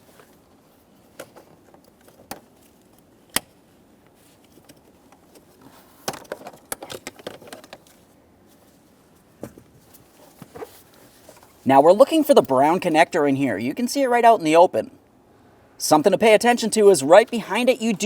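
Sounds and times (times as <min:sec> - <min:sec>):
plastic clicks and rattles: 0:06.1 - 0:08.0.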